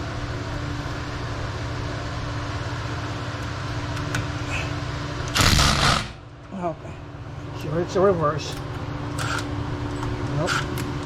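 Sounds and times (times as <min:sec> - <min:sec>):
low mechanical hum: 0:00.0 - 0:11.0
power tool burst: 0:05.3 - 0:06.2.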